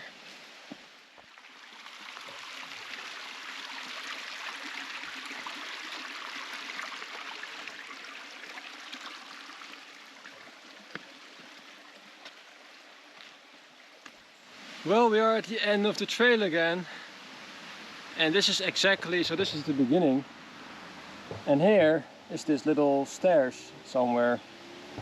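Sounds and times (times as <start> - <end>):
stream water rushing: 0.0 - 25.0.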